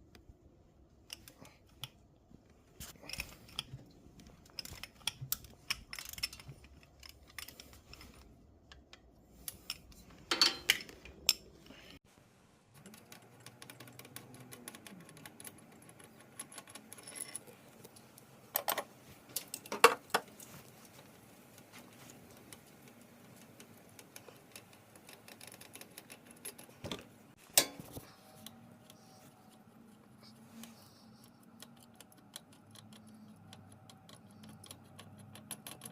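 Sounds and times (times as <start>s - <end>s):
tools and metal parts clinking: 4.5s - 8.2s, 9.5s - 11.5s, 16.0s - 17.6s, 27.6s - 28.0s.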